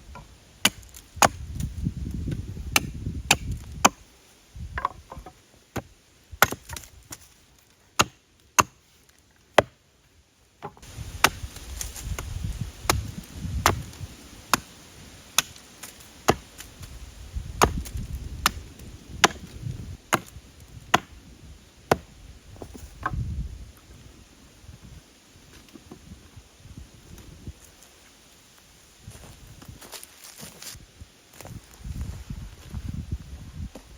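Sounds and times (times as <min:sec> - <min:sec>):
chopping strikes on wood: 0:00.1 - 0:01.4, 0:02.7 - 0:04.0, 0:04.8 - 0:07.2, 0:08.0 - 0:08.8, 0:09.6 - 0:09.8, 0:10.6 - 0:11.4, 0:13.6 - 0:13.9, 0:16.3 - 0:16.5, 0:17.6 - 0:18.6, 0:19.2 - 0:20.3, 0:20.9 - 0:21.1, 0:21.9 - 0:23.2.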